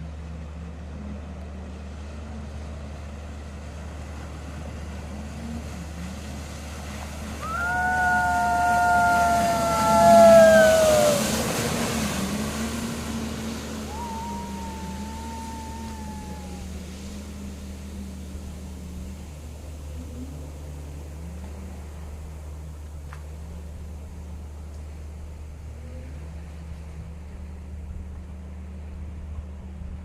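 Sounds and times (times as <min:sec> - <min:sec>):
jet ski engine running: 0:00.0 - 0:30.0
passing craft whine: 0:00.0 - 0:30.0.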